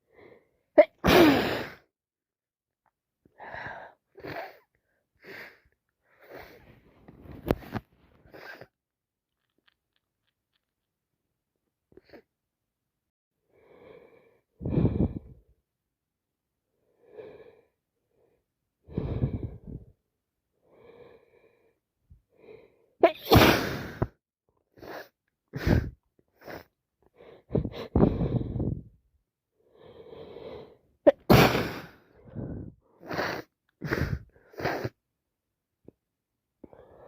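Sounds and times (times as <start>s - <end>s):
woman sneezing: 0.8s - 1.8s, 23.0s - 24.0s, 31.1s - 31.9s
woman breathing: 3.3s - 8.7s, 13.5s - 15.4s, 16.9s - 20.0s, 24.8s - 29.0s, 29.7s - 30.8s, 31.8s - 35.0s, 36.6s - 37.0s.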